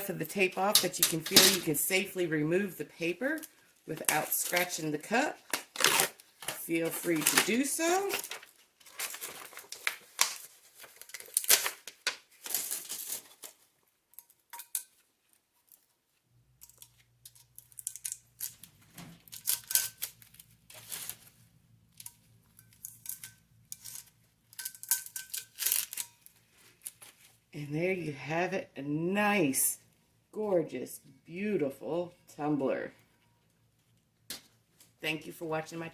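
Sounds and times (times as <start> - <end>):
paper rustling and tearing: 5.4 - 13.7, 17.8 - 21.5.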